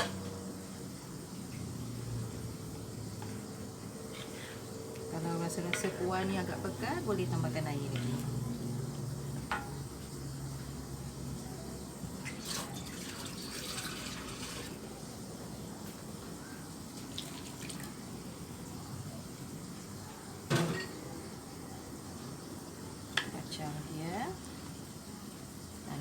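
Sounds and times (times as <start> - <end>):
water pouring into pot: 12.0 - 15.0, 16.9 - 18.2.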